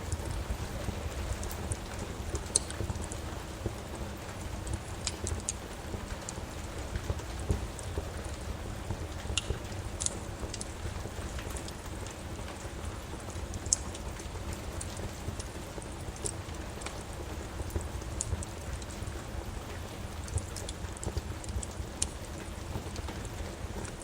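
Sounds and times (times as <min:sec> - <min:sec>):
steady rain: 0:00.0 - 0:24.0
wood fire crackling and popping: 0:00.0 - 0:24.0.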